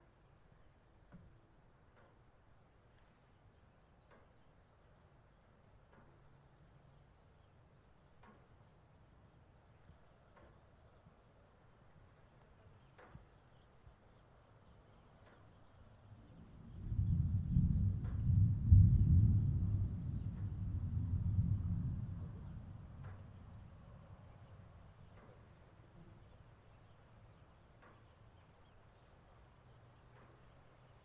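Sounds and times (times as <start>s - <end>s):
faint ticks: 1.0s - 2.3s, 4.0s - 6.6s, 8.1s - 11.2s, 12.0s - 29.3s, 29.9s - 31.0s
low buzz: 16.4s - 24.4s.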